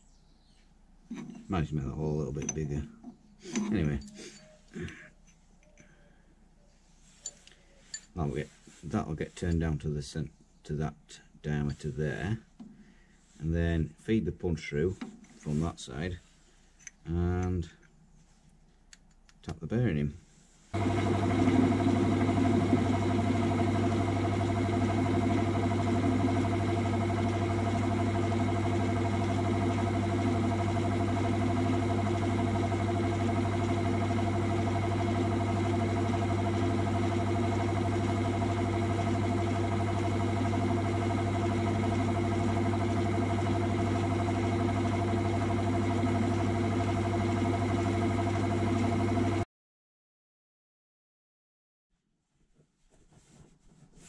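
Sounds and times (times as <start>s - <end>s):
metal lathe running: 20.8s - 49.1s.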